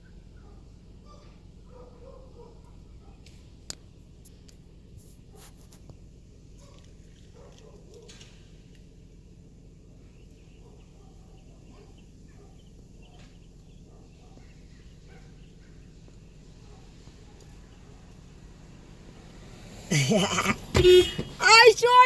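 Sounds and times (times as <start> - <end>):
low background hum: 0.0 - 18.8.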